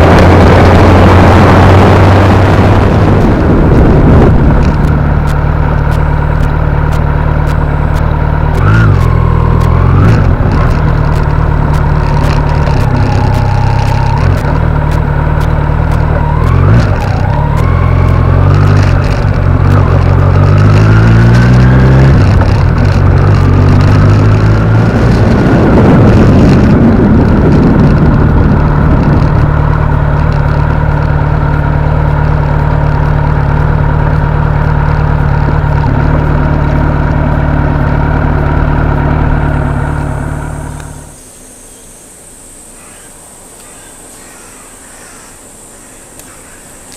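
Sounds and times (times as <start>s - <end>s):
motorcycle engine revving: 0.0s - 43.0s.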